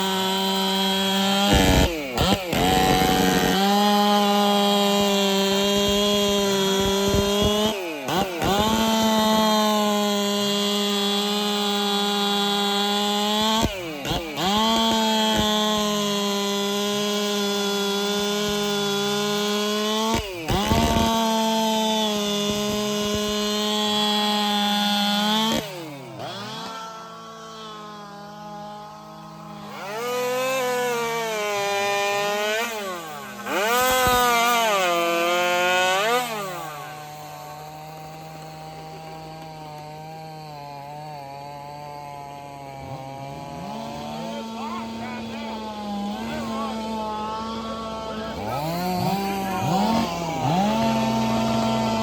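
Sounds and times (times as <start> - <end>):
chainsaw cutting wood: 0.0 - 52.0.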